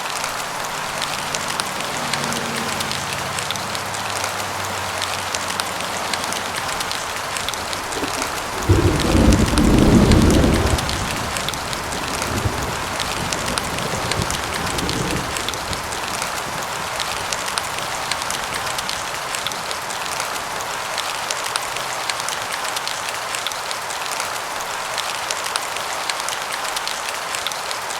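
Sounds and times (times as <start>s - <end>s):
steady rain drop taps: 0.0s - 23.8s
low thunder rumble: 6.8s - 18.6s.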